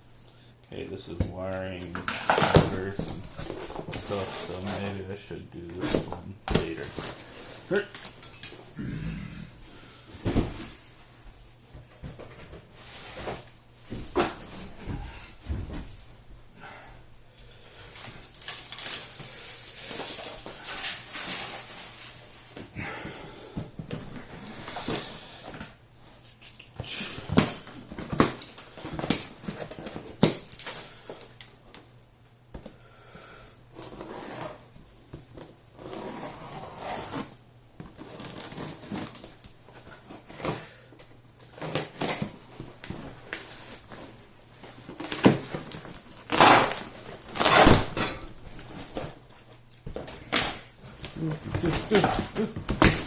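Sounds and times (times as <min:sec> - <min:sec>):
packaging rustling: 0:17.8 - 0:22.6.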